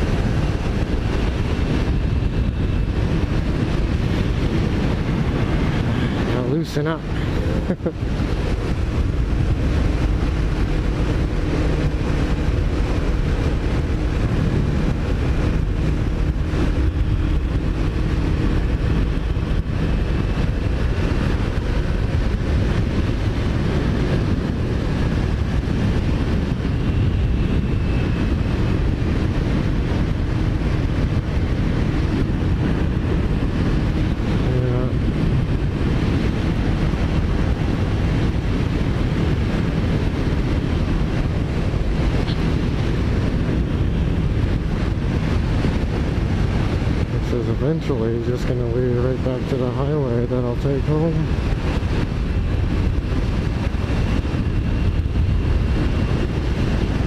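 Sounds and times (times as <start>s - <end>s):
motorcycle engine running: 0.0s - 47.9s
road rumble: 0.0s - 57.0s
wind rushing over microphone: 0.0s - 57.0s.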